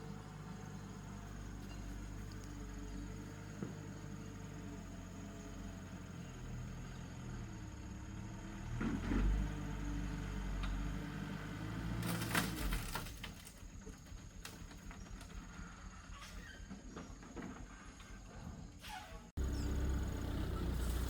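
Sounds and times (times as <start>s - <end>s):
low engine running: 0.0s - 15.5s, 19.4s - 21.0s
clattering: 12.0s - 13.7s.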